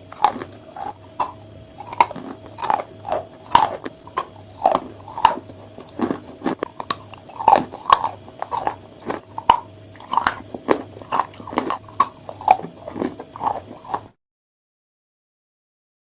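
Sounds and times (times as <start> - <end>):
chalk being chewed: 0.0 - 14.1.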